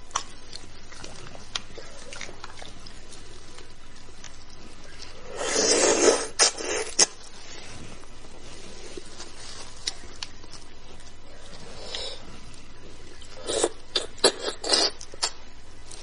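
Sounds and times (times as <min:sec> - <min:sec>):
mouth and chewing noises: 0:00.0 - 0:16.0
loud slurp: 0:05.2 - 0:07.2.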